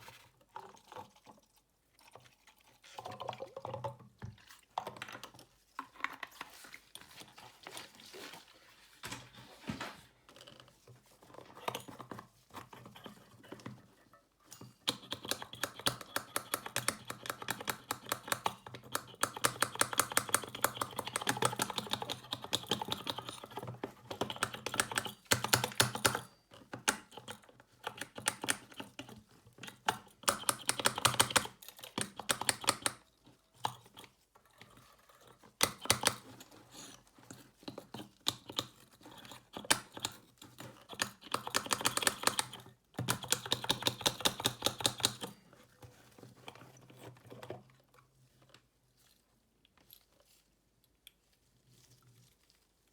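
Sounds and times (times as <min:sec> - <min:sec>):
small hand tools clicking and tapping: 0:14.5 - 0:34.1, 0:35.6 - 0:45.4.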